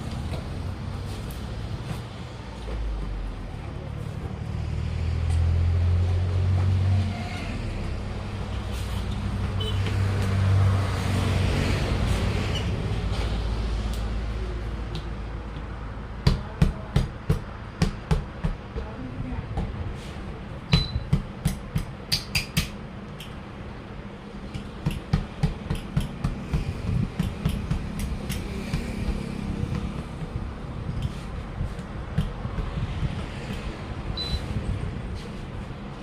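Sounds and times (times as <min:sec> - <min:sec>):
hammer striking truck wheel: 0:20.7 - 0:22.8.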